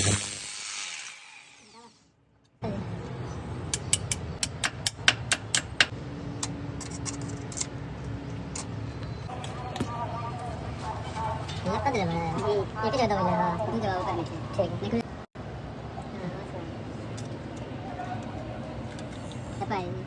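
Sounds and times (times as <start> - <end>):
power drill whirring: 0.0 - 1.8.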